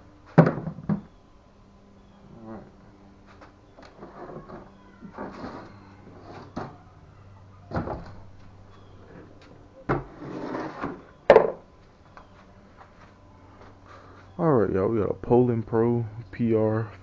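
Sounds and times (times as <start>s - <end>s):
knocks and clunks of hard objects: 0.3s - 1.1s, 9.9s - 10.2s, 10.8s - 11.7s
scraping slide: 4.0s - 6.6s, 10.0s - 11.0s.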